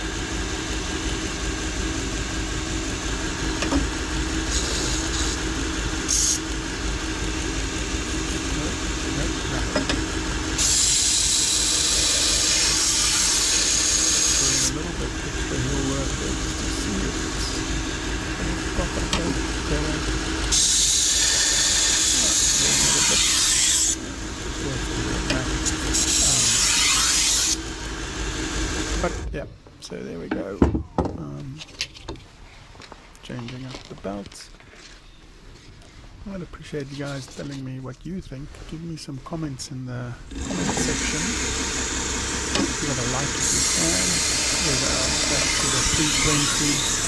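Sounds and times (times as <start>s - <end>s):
belt grinder motor running: 0.0s - 29.3s, 40.2s - 47.0s.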